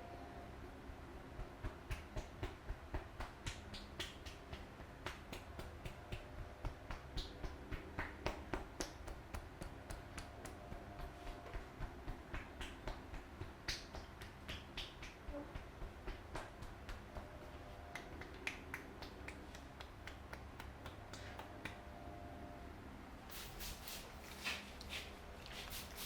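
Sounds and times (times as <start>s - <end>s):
hands slapping and clapping: 1.4s - 21.8s.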